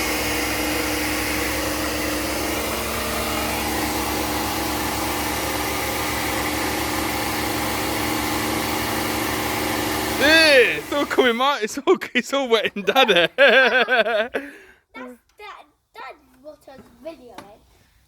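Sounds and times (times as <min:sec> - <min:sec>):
pressure washer motor hum: 0:00.0 - 0:11.6.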